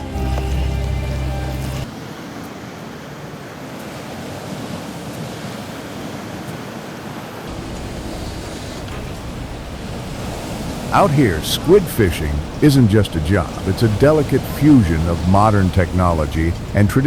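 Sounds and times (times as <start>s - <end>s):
music bed: 0.0s - 1.9s
sea water rushing: 0.0s - 17.0s
wind: 0.0s - 17.0s.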